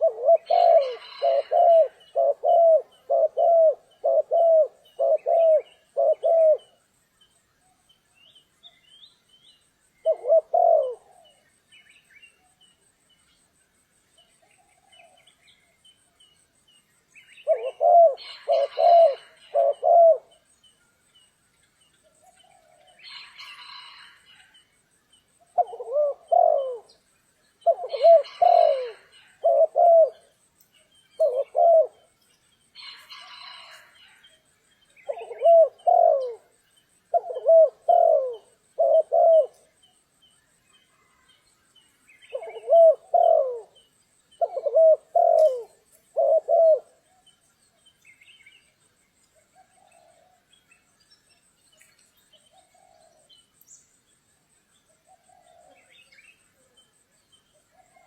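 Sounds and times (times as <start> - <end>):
dove cooing: 0.0 - 6.8, 10.0 - 11.4, 17.4 - 20.4, 25.5 - 27.0, 27.6 - 30.3, 31.2 - 32.1, 35.0 - 39.8, 42.2 - 47.2, 49.6 - 50.5, 52.5 - 53.3, 55.0 - 56.3, 57.7 - 58.0.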